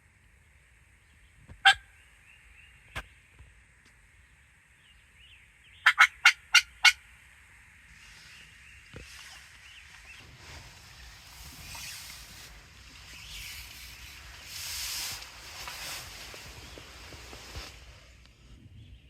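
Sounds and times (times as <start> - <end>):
faint songbird chirps: 0.0 - 7.0, 8.0 - 19.0
turkey yelping: 5.8 - 7.0.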